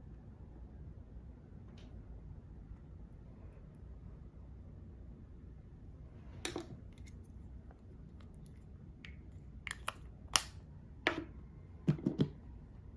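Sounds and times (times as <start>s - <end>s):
makeup containers clicking and tapping: 9.1s - 10.5s, 11.9s - 12.4s.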